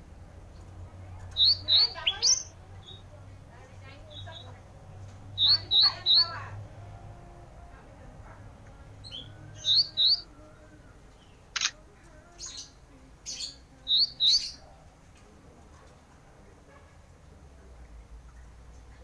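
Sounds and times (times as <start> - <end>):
songbird chirping: 0.6 - 15.3.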